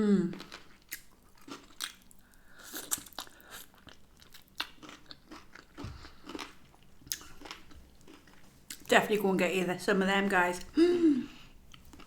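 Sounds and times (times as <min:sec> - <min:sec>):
person chewing crunchy food: 0:00.3 - 0:08.9, 0:11.4 - 0:12.0.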